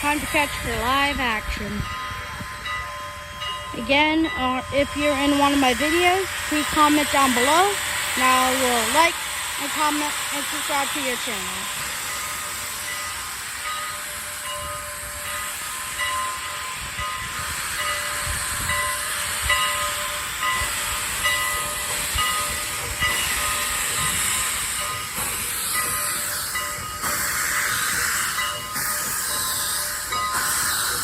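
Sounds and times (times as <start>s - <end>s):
hiss of steam: 0.0s - 31.0s.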